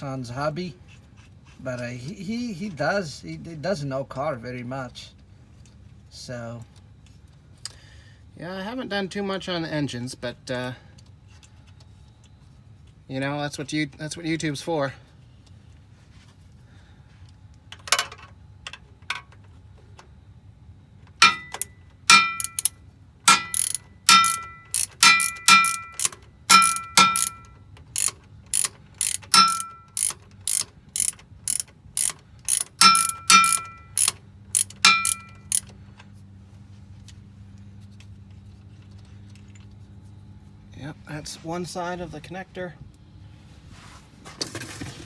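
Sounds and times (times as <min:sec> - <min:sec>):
ratchet wrench clicking: 0:21.2 - 0:35.8.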